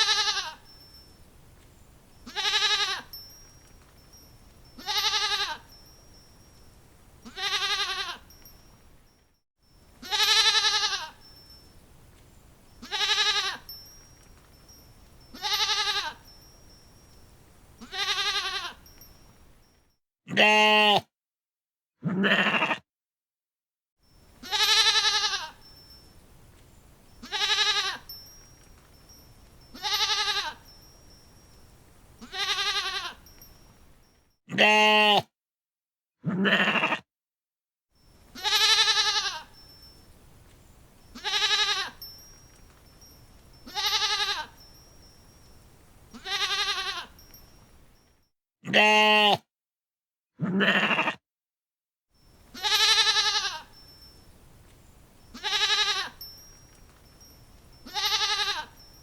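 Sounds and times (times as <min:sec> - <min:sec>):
goat bleating: 0:00.0 - 0:00.6, 0:02.3 - 0:03.1, 0:04.8 - 0:05.7, 0:07.2 - 0:08.4, 0:10.0 - 0:11.2, 0:12.8 - 0:13.6, 0:15.3 - 0:16.2, 0:17.8 - 0:18.9, 0:20.3 - 0:21.0, 0:22.0 - 0:22.8, 0:24.4 - 0:25.6, 0:27.2 - 0:28.0, 0:29.7 - 0:30.6, 0:32.2 - 0:33.2, 0:34.5 - 0:35.2, 0:36.3 - 0:37.0, 0:38.4 - 0:39.5, 0:41.2 - 0:42.0, 0:43.7 - 0:44.6, 0:46.1 - 0:47.2, 0:48.7 - 0:49.4, 0:50.5 - 0:51.2, 0:52.5 - 0:53.7, 0:55.3 - 0:56.2, 0:57.8 - 0:58.8.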